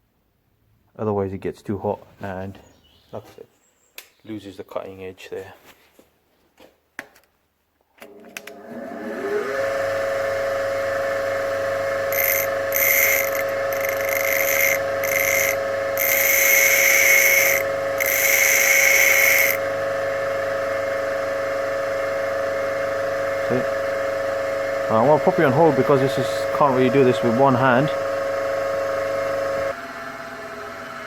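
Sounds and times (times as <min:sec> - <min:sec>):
bench grinder motor whine: 0:08.5 - 0:31.0
drill bit grinding on wheel: 0:11.7 - 0:19.6.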